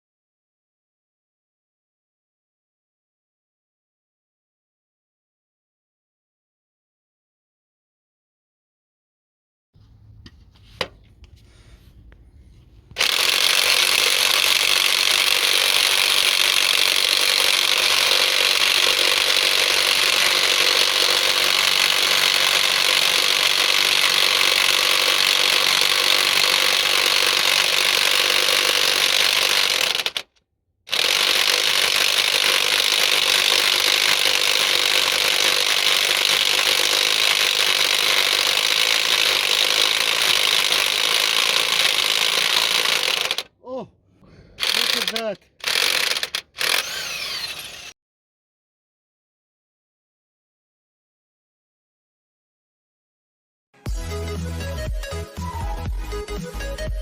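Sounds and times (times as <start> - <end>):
impact wrench hammering: 13.0 - 30.3.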